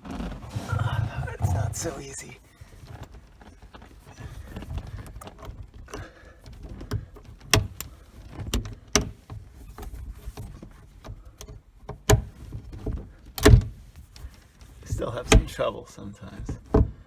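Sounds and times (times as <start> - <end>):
rustling: 0.0 - 11.4
car window latch clicks and knocks: 11.4 - 13.8.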